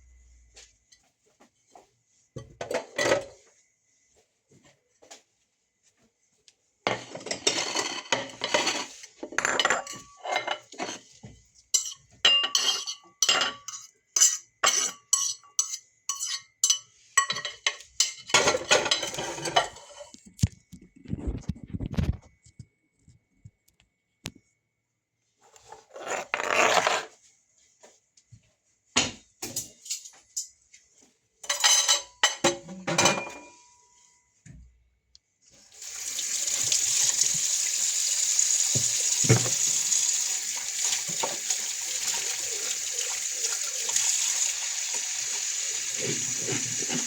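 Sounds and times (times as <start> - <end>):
dishes and utensils clattering: 2.4 - 3.4, 6.9 - 20.2, 29.0 - 30.6, 31.4 - 34.0, 38.7 - 44.7, 45.4 - 47.0
tap water running into sink: 35.8 - 47.0.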